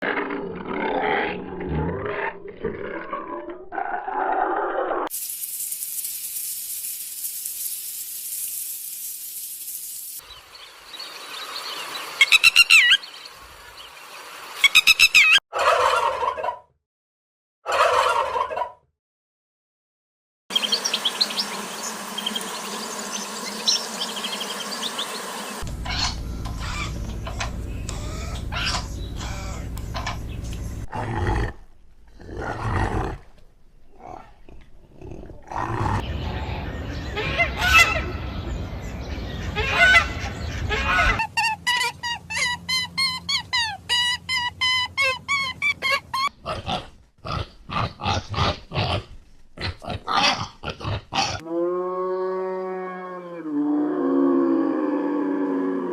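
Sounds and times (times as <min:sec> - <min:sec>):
yard background noise: 0:09.7 - 0:16.6, 0:20.5 - 0:55.8
turkey gobbling: 0:14.7 - 0:16.6, 0:17.7 - 0:18.7, 0:25.7 - 0:30.3
fowl calling: 0:25.7 - 0:30.3.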